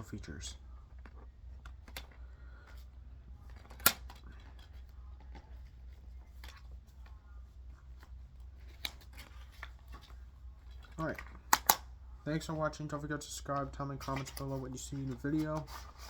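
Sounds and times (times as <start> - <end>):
plastic case snapping: 3.6 - 4.2, 11.5 - 11.8.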